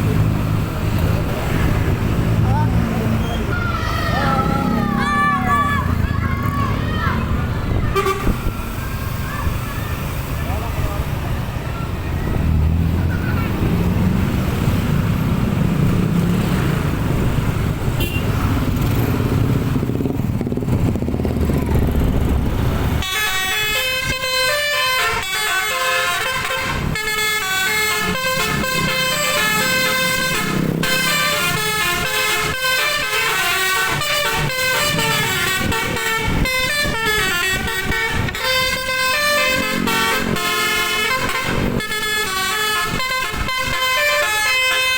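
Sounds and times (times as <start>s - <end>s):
musical air horn: 7.9s - 8.4s, 18.0s - 18.3s, 23.0s - 44.9s.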